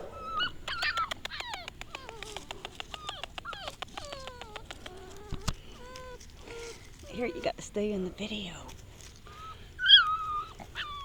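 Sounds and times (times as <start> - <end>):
puppy whimpering: 0.0 - 7.6, 9.2 - 11.0
quick sharp clicks: 0.7 - 5.6.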